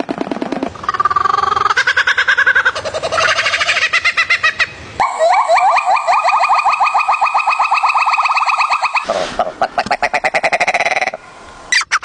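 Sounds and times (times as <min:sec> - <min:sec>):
bird stuttering pulsed calls: 0:00.8 - 0:09.1
upward sweeping chirps: 0:05.0 - 0:09.2.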